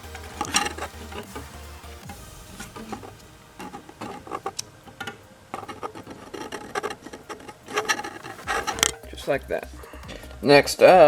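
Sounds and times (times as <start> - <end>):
plastic parts clicking and tapping: 0.0 - 1.6, 2.6 - 9.2.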